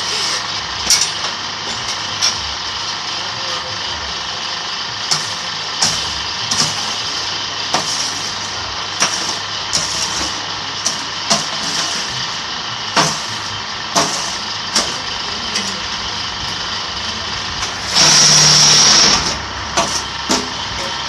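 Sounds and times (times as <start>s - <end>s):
electric motor hum and rattle: 0.0s - 21.0s
machine sharp knocks: 13.0s - 13.3s.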